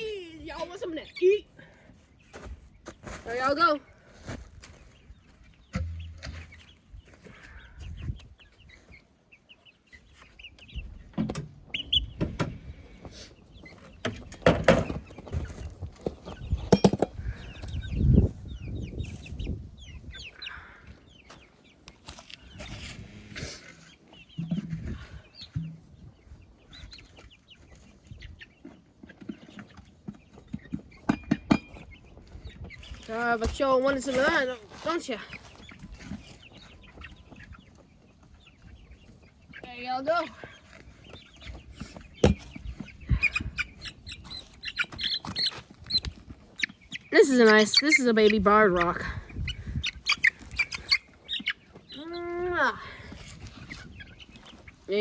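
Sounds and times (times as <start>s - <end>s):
chicks peeping: 0.0s - 55.0s
knocks and rustling: 5.7s - 6.7s, 24.4s - 25.9s.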